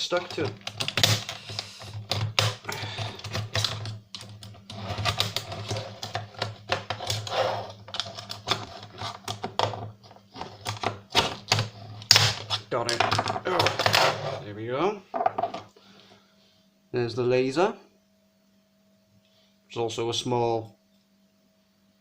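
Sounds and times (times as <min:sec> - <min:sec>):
steady low hum: 0:00.0 - 0:22.0
plastic parts cracking and scraping: 0:00.1 - 0:14.2.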